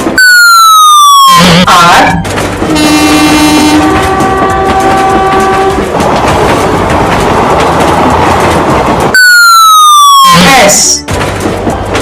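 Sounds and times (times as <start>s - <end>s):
train rumbling on rails: 0.0s - 12.0s
train horn chord: 2.7s - 5.8s.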